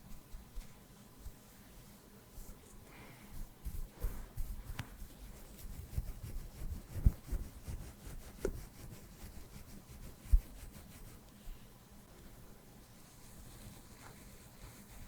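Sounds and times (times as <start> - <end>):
brush rubbing on microphone: 3.4 - 11.3, 13.0 - 15.0.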